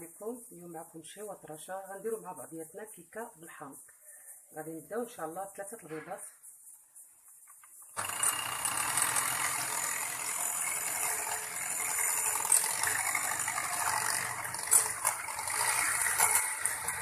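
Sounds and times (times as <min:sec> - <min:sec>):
electric hand mixer beating eggs: 0:08.0 - 0:17.0.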